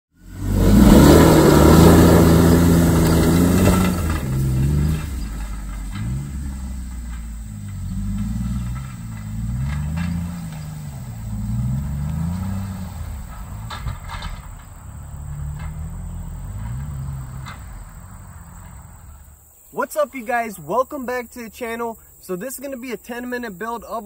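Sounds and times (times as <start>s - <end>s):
vehicle engine revving: 0.1s - 19.6s.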